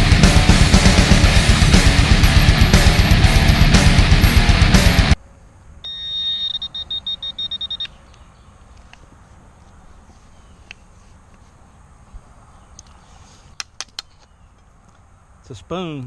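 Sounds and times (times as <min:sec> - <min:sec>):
rock music with guitar: 0:00.0 - 0:05.2
metal detector tone and beeps: 0:05.8 - 0:08.0.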